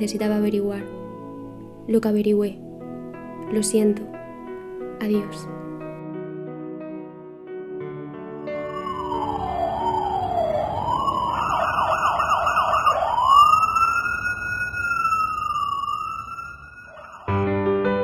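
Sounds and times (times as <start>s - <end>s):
emergency siren wailing and yelping: 8.6s - 17.4s.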